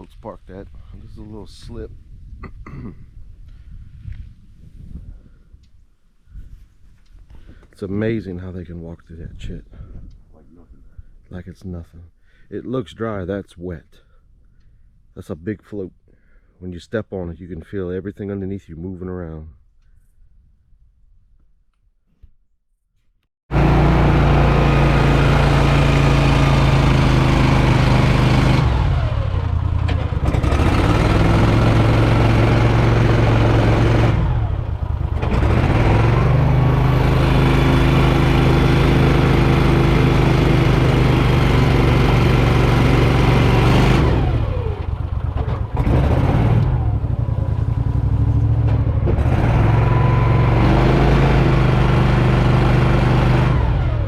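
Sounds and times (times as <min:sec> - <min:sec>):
boat motor revving: 0:23.5 - 0:54.0.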